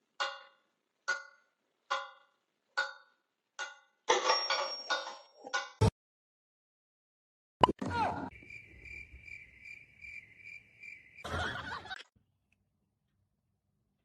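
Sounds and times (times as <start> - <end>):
cricket-like chirping: 8.3 - 12.0.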